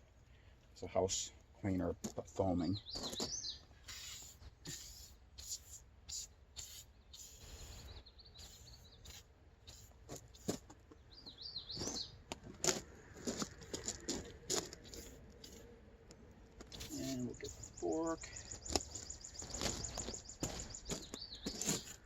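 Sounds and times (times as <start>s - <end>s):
small birds chirping: 2.2s - 12.4s, 14.9s - 22.0s
zigzagging bird calls: 2.8s - 10.6s, 11.2s - 12.2s, 16.7s - 22.0s.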